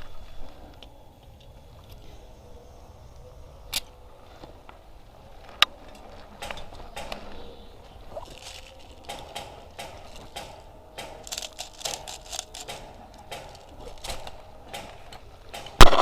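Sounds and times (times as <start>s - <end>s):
faint clicks and knocks: 5.4s - 16.0s
airsoft gun shots: 15.5s - 16.0s.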